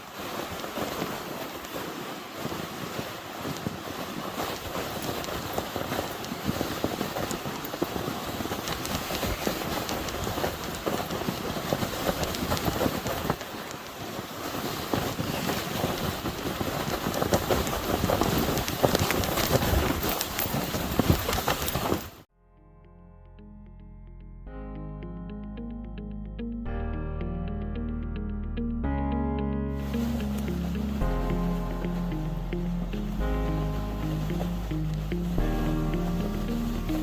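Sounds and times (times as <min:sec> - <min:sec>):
crunching and scraping over snow: 0:00.0 - 0:22.3, 0:29.8 - 0:37.0
wind on microphone: 0:00.0 - 0:22.3.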